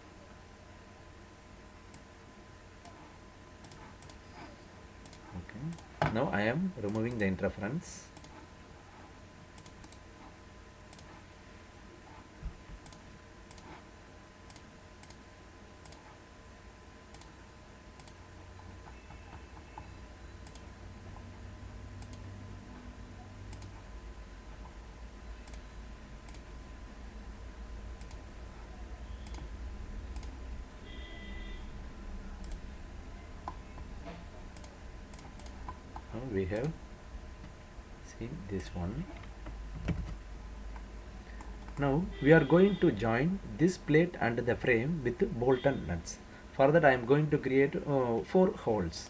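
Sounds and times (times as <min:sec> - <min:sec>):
steady low hum: 0:00.0 - 0:49.0
computer mouse clicking: 0:03.6 - 0:04.2, 0:05.0 - 0:05.9, 0:08.2 - 0:08.4, 0:09.6 - 0:10.0, 0:10.9 - 0:11.2, 0:12.7 - 0:13.8, 0:14.5 - 0:15.2, 0:15.8 - 0:16.2, 0:17.1 - 0:17.4, 0:18.0 - 0:18.2, 0:18.9 - 0:20.7, 0:22.0 - 0:22.3, 0:23.5 - 0:23.9, 0:25.4 - 0:26.5, 0:28.0 - 0:28.3, 0:29.2 - 0:30.4, 0:32.4 - 0:32.7, 0:34.5 - 0:36.8, 0:38.6 - 0:41.8.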